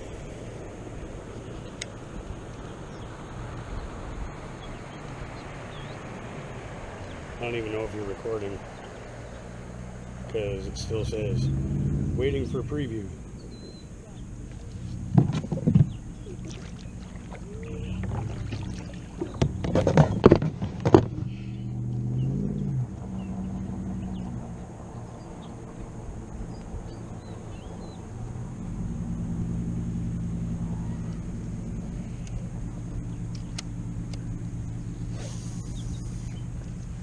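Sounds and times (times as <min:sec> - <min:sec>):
low motor hum: 0:00.0 - 0:37.0
knocks and clatter: 0:15.1 - 0:16.0, 0:19.2 - 0:21.3.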